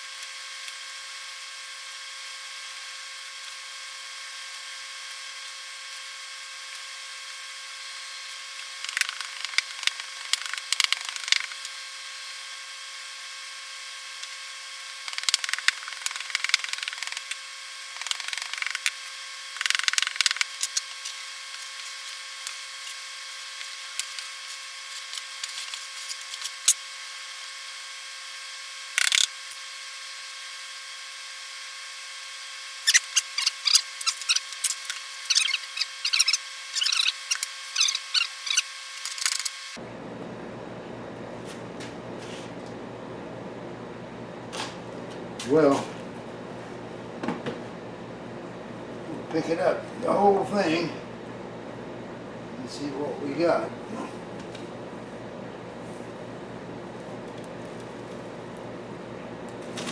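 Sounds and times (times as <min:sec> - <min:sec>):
faint hum: 0:32.8 - 0:59.9.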